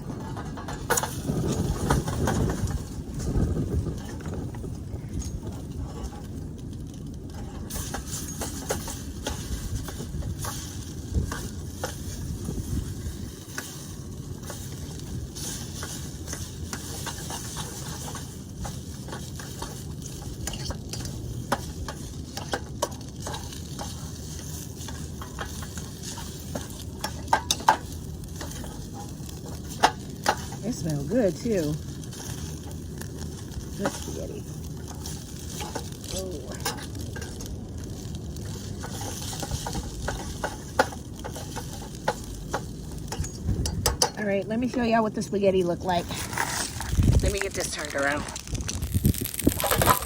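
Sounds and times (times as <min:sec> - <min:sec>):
utensil scraping and clinking pot: 0:00.0 - 0:06.6, 0:07.2 - 0:48.3
spaghetti sizzling in a pot: 0:00.7 - 0:50.0.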